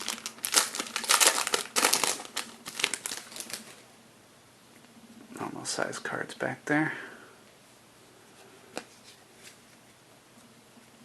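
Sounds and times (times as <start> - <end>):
foil wrapper crinkling: 0.0 - 3.8.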